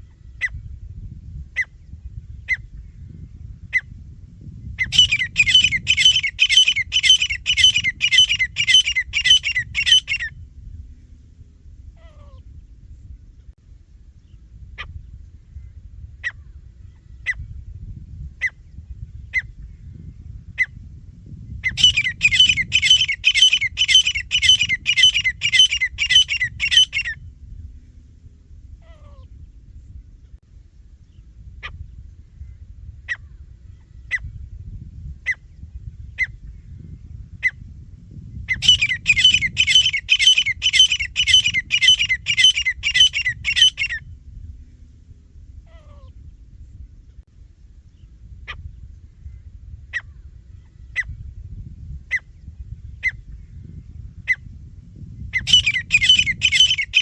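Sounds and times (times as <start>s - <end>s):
francolins calling: 4.7s - 10.3s, 21.6s - 27.2s, 38.4s - 44.0s, 55.2s - 57.0s.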